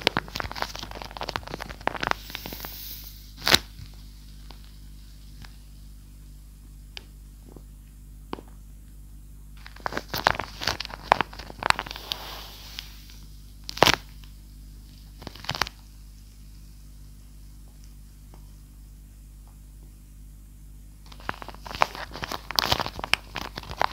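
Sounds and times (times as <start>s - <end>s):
paper crinkling and crackling: 0.0s - 5.6s, 9.6s - 16.4s, 21.0s - 23.9s.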